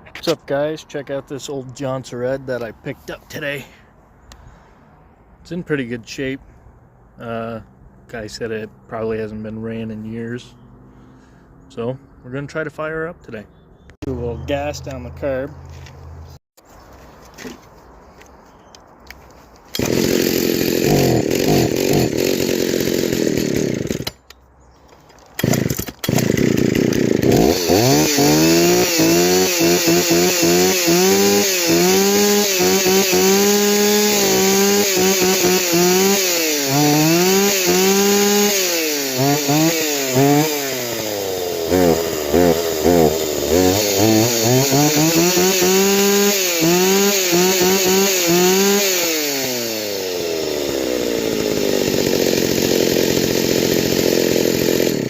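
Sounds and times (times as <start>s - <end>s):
chainsaw engine revving: 19.7s - 24.3s, 25.3s - 55.0s.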